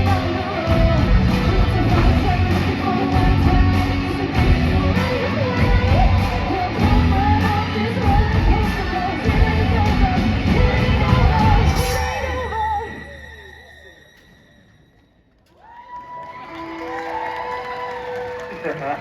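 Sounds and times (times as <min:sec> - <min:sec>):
heavy rock music: 0:00.0 - 0:12.9.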